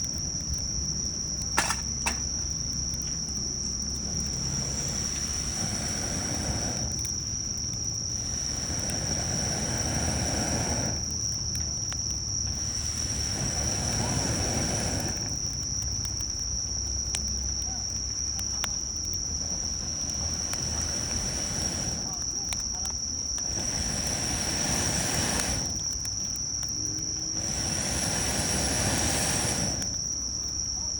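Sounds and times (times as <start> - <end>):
campfire snaps: 0.0 - 30.9
insects trilling: 0.0 - 30.9.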